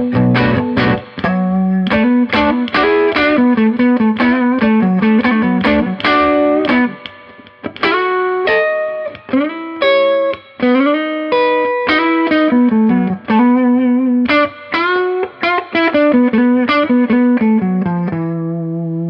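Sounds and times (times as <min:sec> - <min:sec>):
clean electric guitar notes: 0:00.0 - 0:09.8.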